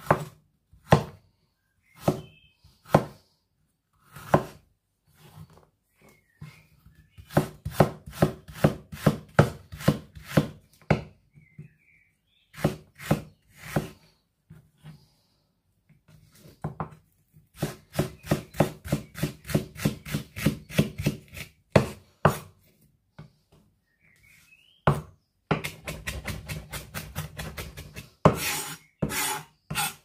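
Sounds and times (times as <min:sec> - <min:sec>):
knife chopping on a board: 0:00.0 - 0:01.2, 0:02.9 - 0:03.2, 0:04.1 - 0:04.6, 0:07.2 - 0:11.1, 0:17.6 - 0:22.5, 0:24.9 - 0:30.0.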